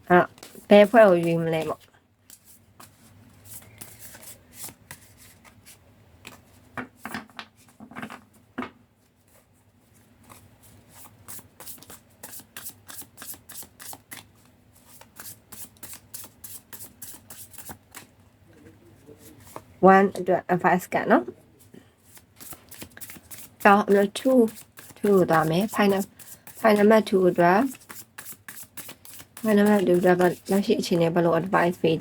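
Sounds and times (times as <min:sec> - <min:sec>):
cards being shuffled: 0:00.3 - 0:07.1, 0:10.2 - 0:18.1, 0:22.1 - 0:30.8.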